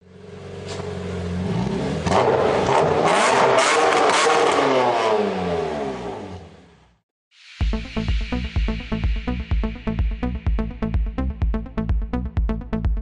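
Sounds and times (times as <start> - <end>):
car engine revving: 0.0 - 6.9
electronic music: 7.4 - 13.0.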